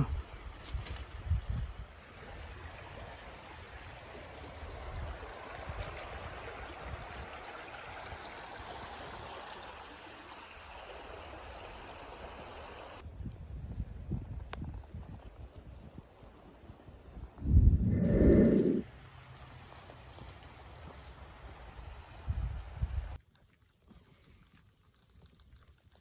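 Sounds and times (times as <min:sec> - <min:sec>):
rushing splashing water: 0:02.2 - 0:13.0.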